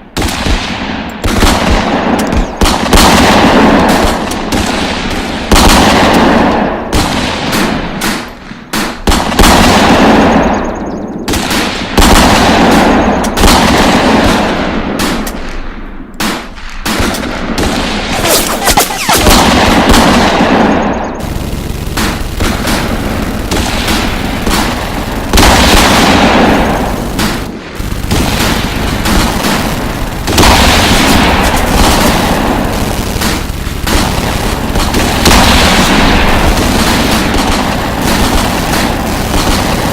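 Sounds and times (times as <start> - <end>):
automatic machine-gun fire: 0.0 - 15.2, 16.3 - 39.9
single gunshots: 16.2 - 39.9.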